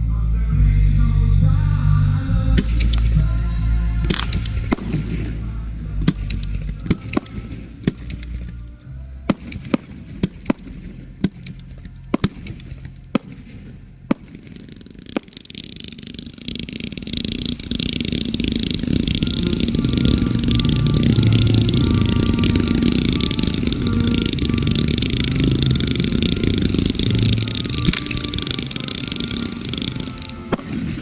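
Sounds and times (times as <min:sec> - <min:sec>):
fireworks exploding: 0:02.6 - 0:03.4, 0:04.0 - 0:08.7, 0:09.3 - 0:31.0
loud continuous noise: 0:14.8 - 0:31.0
music playing: 0:16.8 - 0:31.0.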